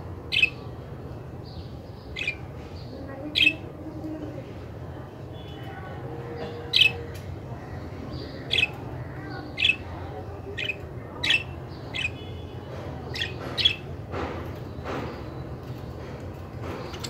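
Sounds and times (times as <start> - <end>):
scratchy budgerigar calls: 0.3 - 0.6, 2.2 - 2.4, 6.7 - 7.1, 8.2 - 8.8, 9.4 - 12.3, 13.1 - 13.9
budgerigars chirping and squawking: 10.5 - 12.2.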